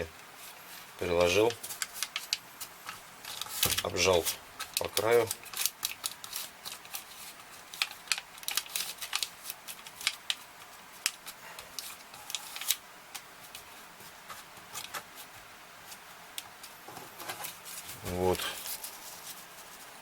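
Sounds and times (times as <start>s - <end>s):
paper crinkling and rustling: 0.4s - 16.0s, 16.6s - 20.0s.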